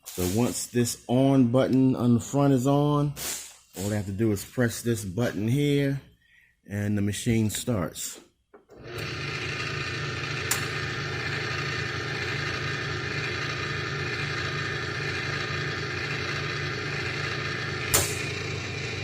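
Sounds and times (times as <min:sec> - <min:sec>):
key cutting machine whining: 0:08.6 - 0:19.0.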